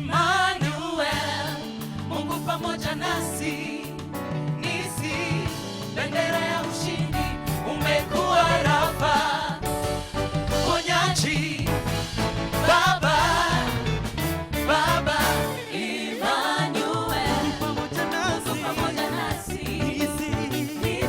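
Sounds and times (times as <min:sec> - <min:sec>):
band playing gospel music: 0:00.0 - 0:21.0
person singing: 0:17.3 - 0:21.0.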